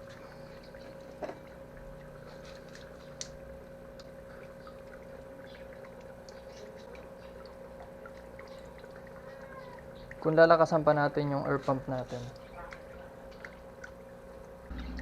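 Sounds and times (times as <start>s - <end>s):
water drips and bubble pops: 0.0s - 10.7s
water bubbling up a pipe: 0.0s - 10.9s
electric air pump humming: 14.6s - 15.0s.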